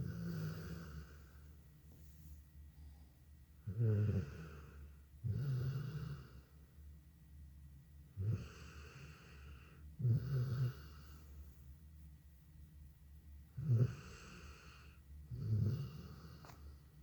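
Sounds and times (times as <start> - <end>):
dog snoring: 0.0 - 1.2, 3.6 - 6.4, 8.2 - 11.2, 13.5 - 16.8.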